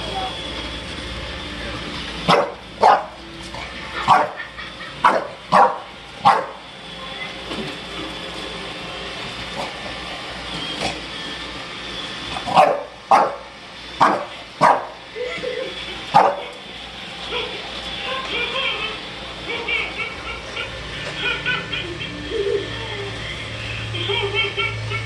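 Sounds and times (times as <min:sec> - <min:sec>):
robot vacuum running: 0:00.0 - 0:25.0
dog barking: 0:02.3 - 0:03.1, 0:04.1 - 0:04.4, 0:05.0 - 0:06.6, 0:12.5 - 0:15.0, 0:16.1 - 0:16.5.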